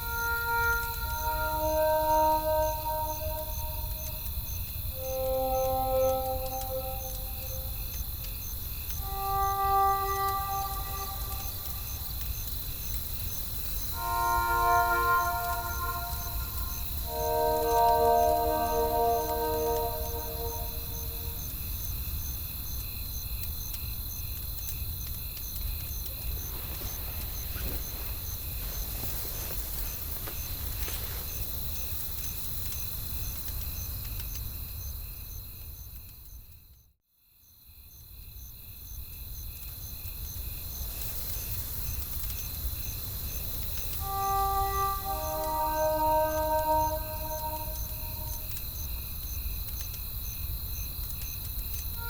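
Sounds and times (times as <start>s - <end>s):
crickets chirping: 0.0s - 21.9s, 38.7s - 52.0s.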